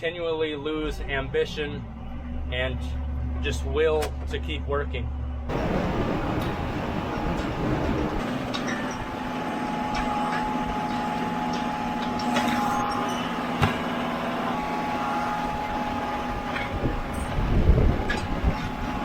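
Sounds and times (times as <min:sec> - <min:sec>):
tractor engine whining: 0:00.1 - 0:19.0
loud clunks: 0:11.6 - 0:14.0.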